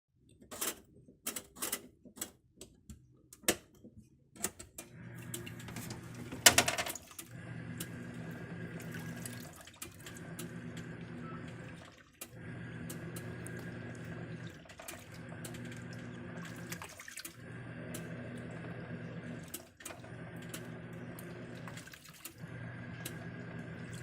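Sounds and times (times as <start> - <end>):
washing machine hum: 3.8 - 24.0
washing machine clicks: 4.4 - 24.0
running water filling: 5.0 - 24.0.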